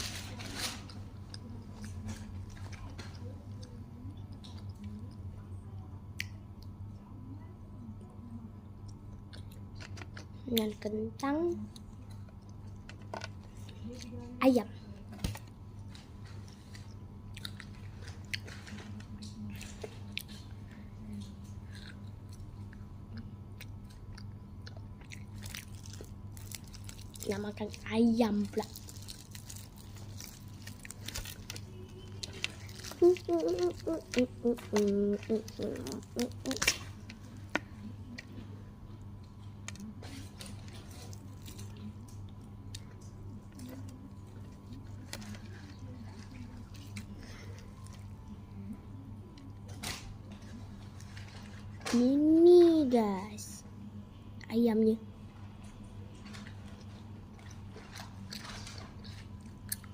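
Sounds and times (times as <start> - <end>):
steady low hum: 0.0 - 59.9
person chewing crunchy food: 15.8 - 18.8, 21.5 - 38.4.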